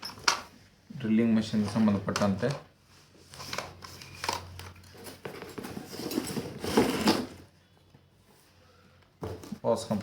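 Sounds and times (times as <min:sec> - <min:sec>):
plastic tool case rustling: 0:03.3 - 0:07.5.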